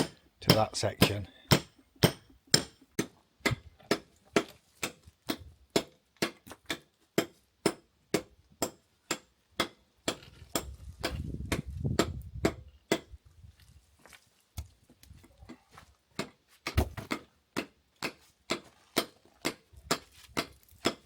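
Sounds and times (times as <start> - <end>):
hammer and chisel tapping stone: 0.0 - 13.1, 16.2 - 21.0.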